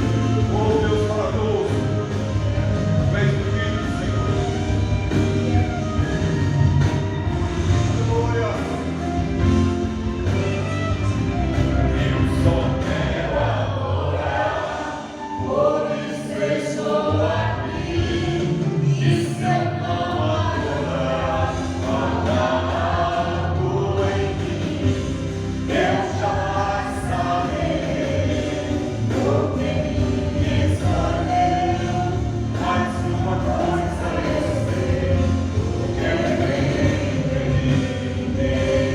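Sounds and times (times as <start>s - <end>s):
group singing gospel song: 0.0s - 10.5s, 11.2s - 38.9s
instrumental accompaniment: 0.0s - 38.9s.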